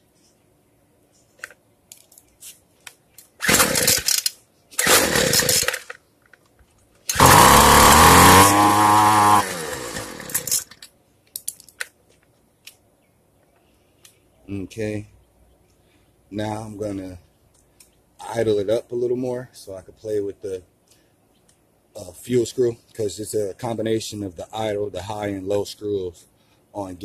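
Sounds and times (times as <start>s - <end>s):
string trimmer engine starting: 3.4s - 5.9s, 7.1s - 10.7s.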